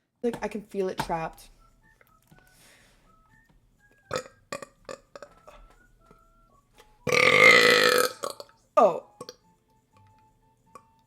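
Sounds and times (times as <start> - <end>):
person burping: 4.1 - 5.4, 7.1 - 9.4.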